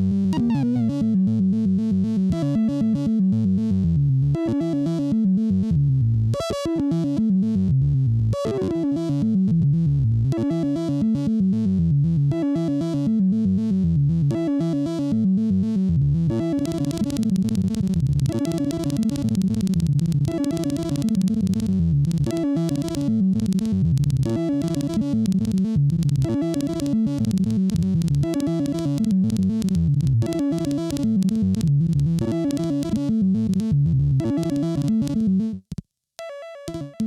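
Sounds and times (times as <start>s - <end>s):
synthesizer repeating sequence: 16.4s - 35.5s.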